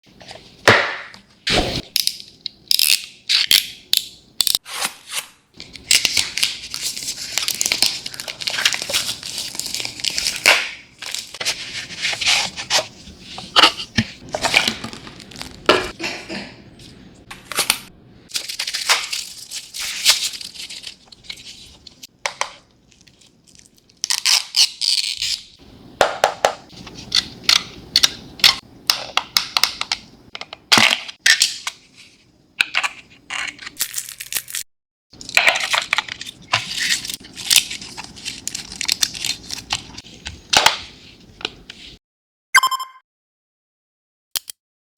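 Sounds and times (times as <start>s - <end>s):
packaging crinkling and tearing: 5.6s - 15.7s, 18.3s - 22.1s, 22.9s - 25.5s, 33.7s - 34.6s, 35.2s - 40.5s.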